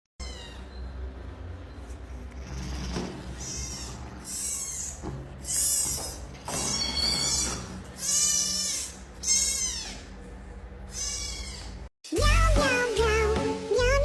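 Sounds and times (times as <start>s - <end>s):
high-pitched animal cries: 0.2s - 0.9s, 2.7s - 10.2s, 10.9s - 11.9s.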